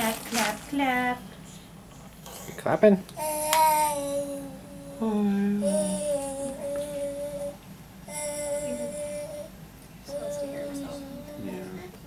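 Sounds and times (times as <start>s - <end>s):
baby humming: 3.2s - 12.0s.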